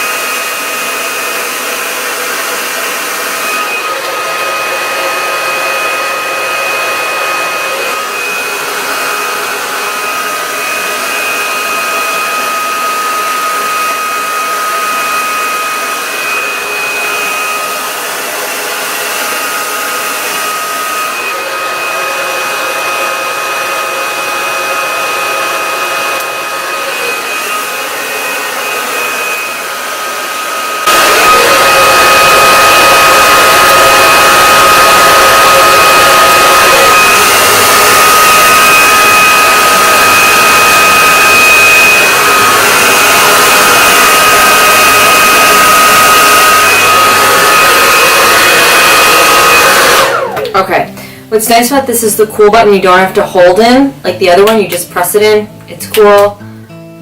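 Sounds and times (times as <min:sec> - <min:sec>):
blow dryer running: 0:00.0 - 0:56.4.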